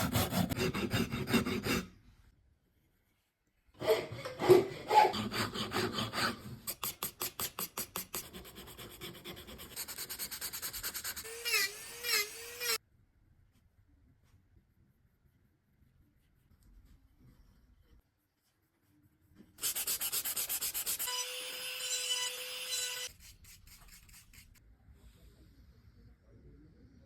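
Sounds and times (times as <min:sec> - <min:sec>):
hand tools scraping wood: 0:00.0 - 0:01.9, 0:03.8 - 0:09.7.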